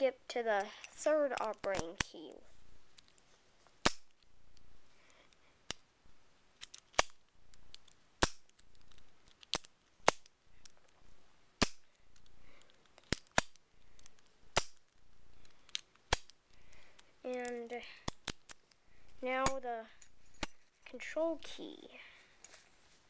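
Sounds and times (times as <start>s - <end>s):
soft handling noise: 0.6s - 23.0s
padlock clicking: 11.6s - 16.4s.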